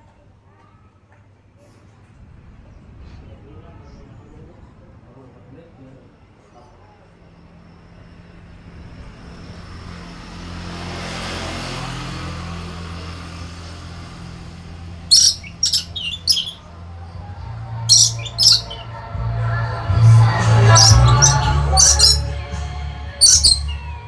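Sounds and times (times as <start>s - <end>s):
parrot squawking: 15.1s - 16.6s, 17.9s - 18.8s, 20.6s - 22.3s, 23.2s - 23.8s.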